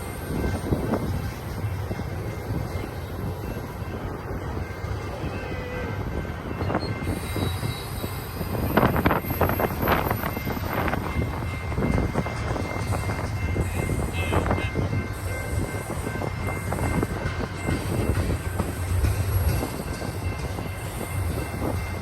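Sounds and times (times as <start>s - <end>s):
train wheels rumbling on rail: 0.0s - 22.0s.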